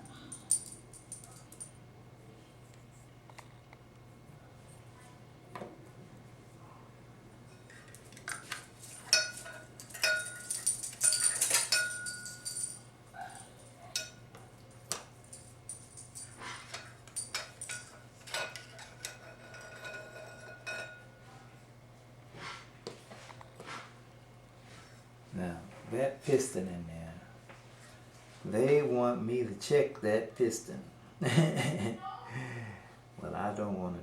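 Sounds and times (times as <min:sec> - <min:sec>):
metal parts clinking and tapping: 0:00.3 - 0:01.7, 0:07.7 - 0:12.8, 0:13.9 - 0:21.0.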